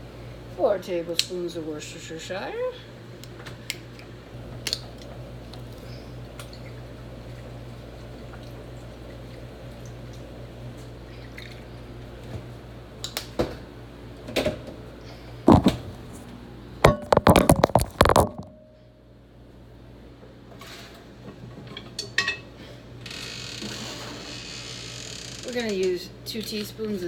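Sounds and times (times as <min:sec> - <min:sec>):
steady low hum: 0:13.6 - 0:20.2
knocks: 0:15.5 - 0:15.9
utensils and bottles clinking: 0:16.9 - 0:18.6.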